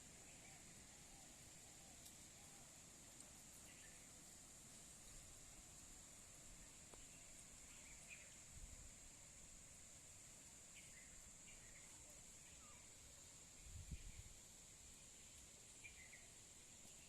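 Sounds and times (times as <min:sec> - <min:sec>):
high insect drone: 0:00.0 - 0:17.0.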